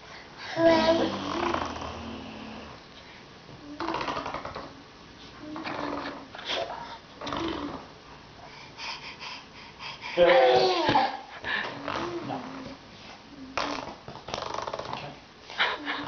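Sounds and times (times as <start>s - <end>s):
child blowing raspberries: 0.6s - 2.6s.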